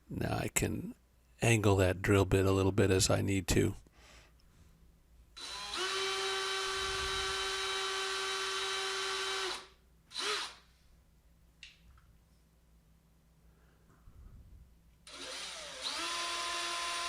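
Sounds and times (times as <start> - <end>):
small drill whining: 5.4 - 10.7, 15.1 - 17.0.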